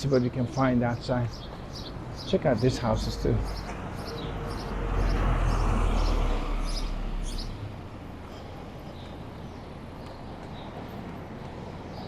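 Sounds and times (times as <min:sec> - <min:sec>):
city background noise: 0:00.0 - 0:12.0
high bird chirps: 0:01.3 - 0:07.8
vehicle passing with low rumble: 0:02.0 - 0:08.8.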